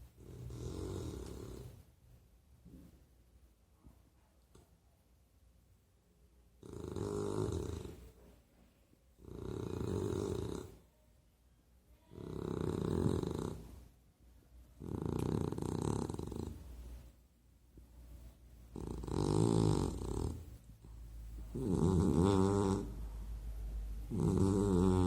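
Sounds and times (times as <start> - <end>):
dog snoring: 0.2 - 1.8, 6.6 - 8.1, 9.2 - 10.8, 12.1 - 13.8, 14.8 - 16.6, 18.7 - 20.5, 21.5 - 23.0, 24.1 - 25.0.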